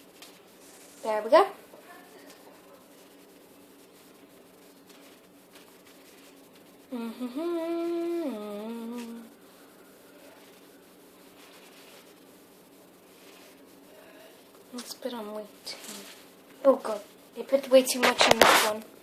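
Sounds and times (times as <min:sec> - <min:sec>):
person humming: 0:06.9 - 0:09.4.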